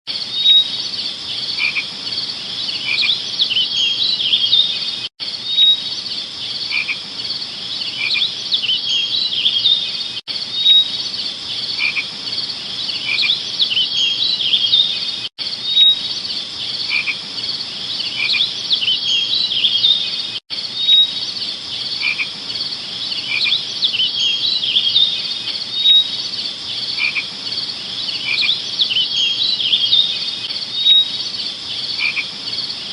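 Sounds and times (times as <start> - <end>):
insect chirping calls: 0.1 - 32.9
insects trilling: 0.2 - 32.9.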